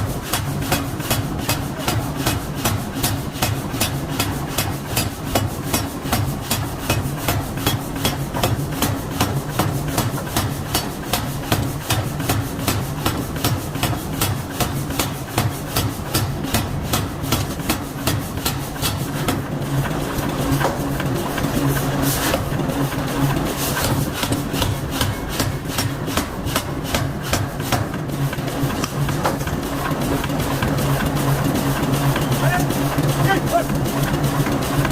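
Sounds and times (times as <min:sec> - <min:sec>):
low machine hum: 0:00.0 - 0:34.9
power hammer striking hot steel: 0:00.2 - 0:19.4, 0:23.5 - 0:30.8.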